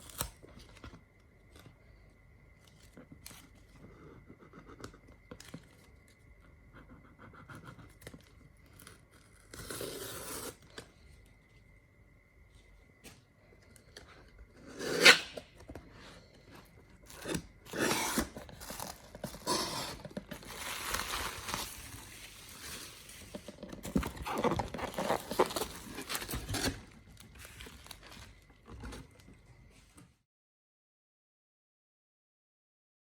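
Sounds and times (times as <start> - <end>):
packaging crinkling and rustling: 17.0 - 29.3.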